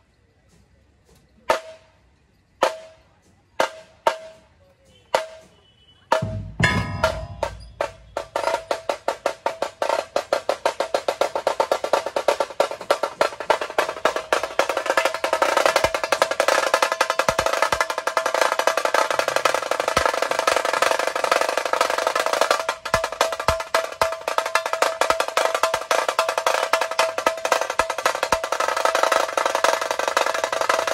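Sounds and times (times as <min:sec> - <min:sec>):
dhol drum stroke: 0:06.1 - 0:10.1
tasha drum roll: 0:06.1 - 0:30.9.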